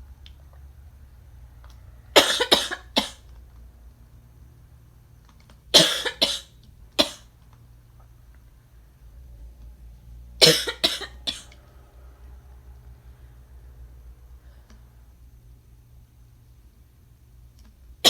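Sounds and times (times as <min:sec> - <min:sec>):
person coughing: 0:02.2 - 0:03.2, 0:05.8 - 0:07.3, 0:10.4 - 0:11.5.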